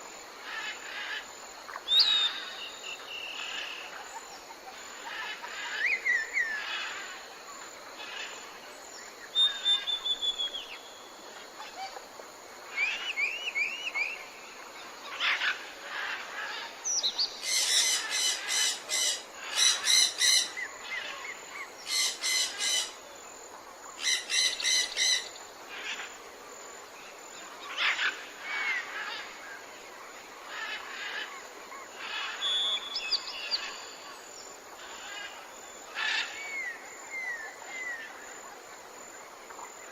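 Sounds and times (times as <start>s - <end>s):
insect hiss: 0.0s - 39.9s
birds chirping and whistling: 9.4s - 10.8s.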